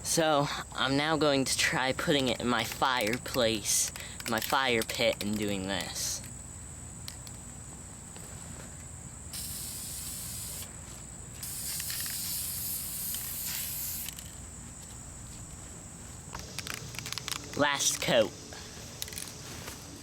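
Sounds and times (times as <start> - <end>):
aerosol can spray hissing: 9.4 - 10.7, 11.4 - 14.4.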